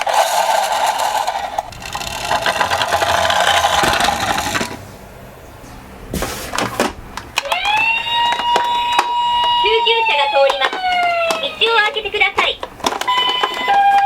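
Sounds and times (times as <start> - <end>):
toy cars rattling down a slope: 0.0 - 4.8.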